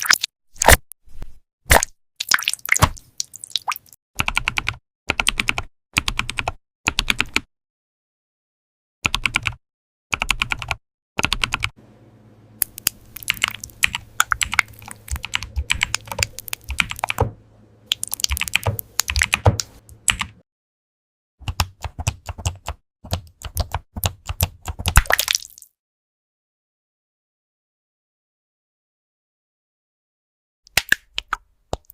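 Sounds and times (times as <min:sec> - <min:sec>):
faint steady hum: 0:11.8 - 0:20.4.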